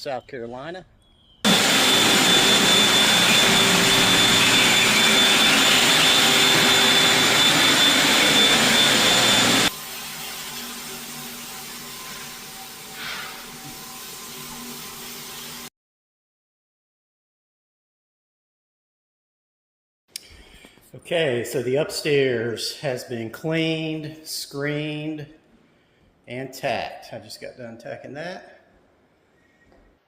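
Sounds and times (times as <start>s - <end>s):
floor-care machine whining: 1.5s - 15.7s.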